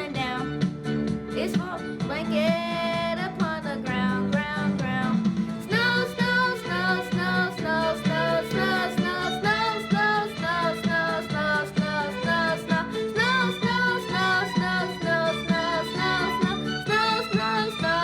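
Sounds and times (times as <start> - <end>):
guitar accompaniment: 0.0 - 18.0
children singing: 5.7 - 18.0.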